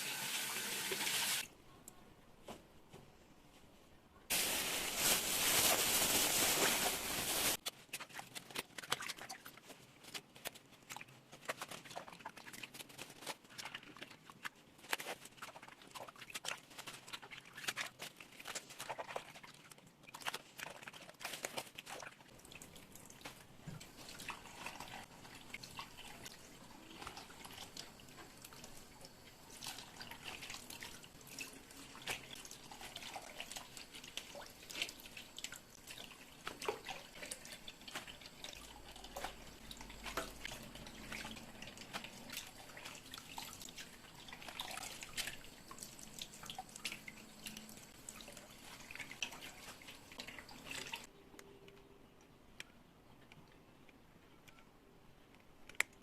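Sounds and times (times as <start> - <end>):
water dripping and trickling: 21.9 - 51.1.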